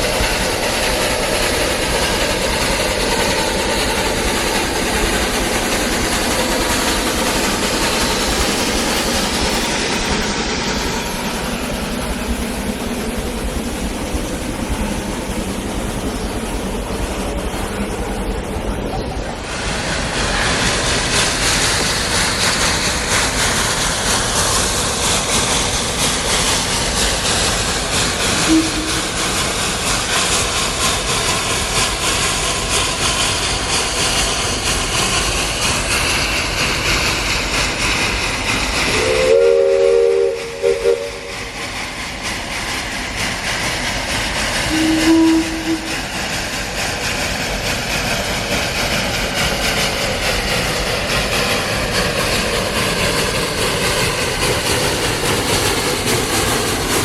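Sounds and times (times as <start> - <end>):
steam locomotive hissing steam: 0.0 - 57.0
low whistle toot: 28.4 - 29.2, 38.9 - 41.3, 44.7 - 46.0.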